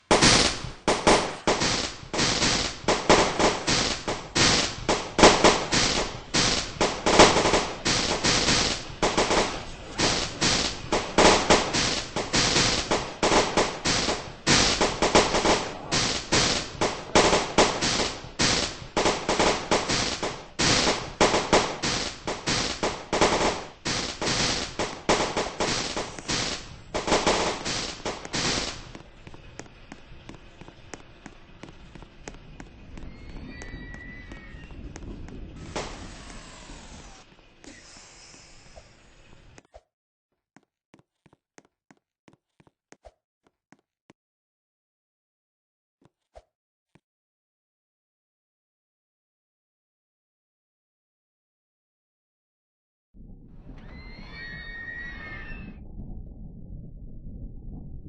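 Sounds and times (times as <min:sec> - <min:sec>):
firecrackers cracking: 0:00.0 - 0:39.6.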